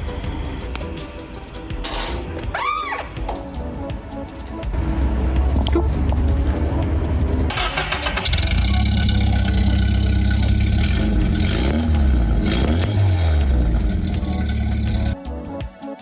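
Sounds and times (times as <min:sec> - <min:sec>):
car engine revving: 0:03.4 - 0:15.2.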